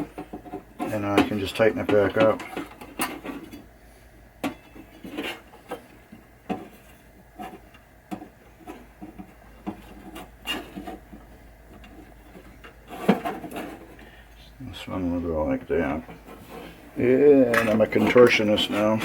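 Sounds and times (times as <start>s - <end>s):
small clicks taps and rubbing: 4.4s - 14.0s.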